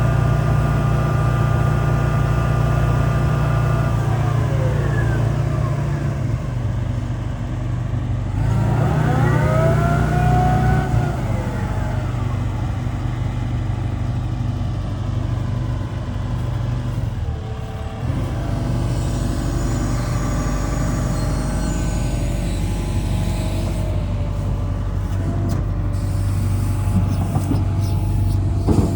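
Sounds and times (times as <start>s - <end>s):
excavator diesel engine droning: 0.0s - 28.9s
hydraulic whine rising and falling: 2.9s - 7.0s, 8.3s - 13.6s, 18.0s - 28.9s.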